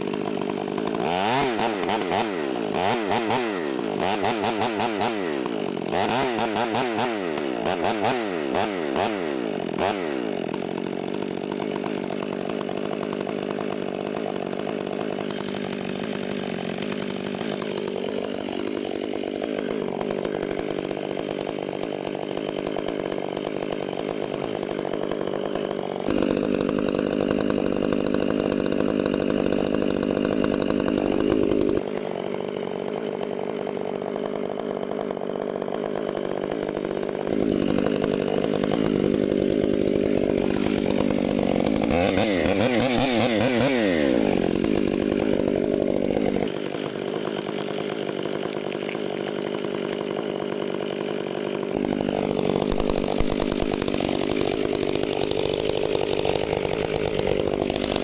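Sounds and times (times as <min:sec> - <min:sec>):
chainsaw revving and cutting wood: 0:00.0 - 0:58.0.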